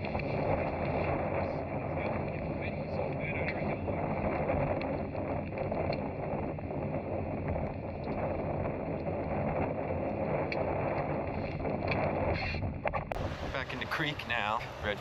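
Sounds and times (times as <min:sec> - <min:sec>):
rushing wind: 0:00.0 - 0:15.0
boat motor running: 0:12.2 - 0:15.0
water noise: 0:12.8 - 0:15.0.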